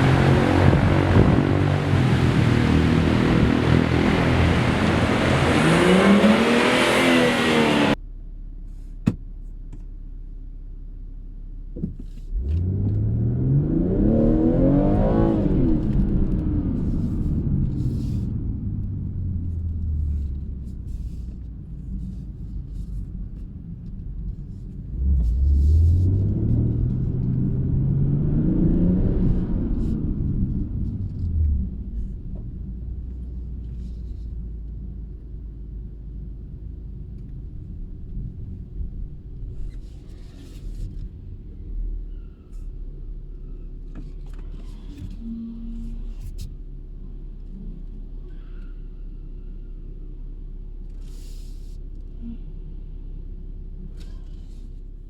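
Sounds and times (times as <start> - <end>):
car engine revving: 0.0 - 8.0, 12.3 - 23.0, 24.8 - 34.2.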